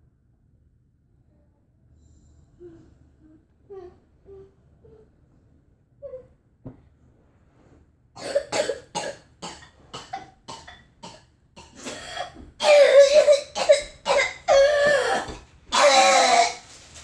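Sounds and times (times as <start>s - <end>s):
child coughing: 8.2s - 16.6s.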